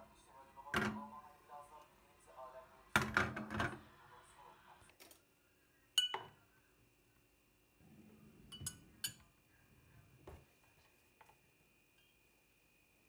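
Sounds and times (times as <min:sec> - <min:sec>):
tableware clinking: 0:06.0 - 0:06.4, 0:08.5 - 0:09.3.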